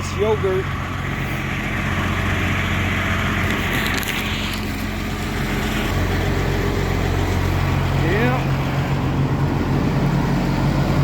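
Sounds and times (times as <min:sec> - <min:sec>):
diesel engine running: 0:00.0 - 0:11.0
crackling rustle: 0:03.1 - 0:06.3.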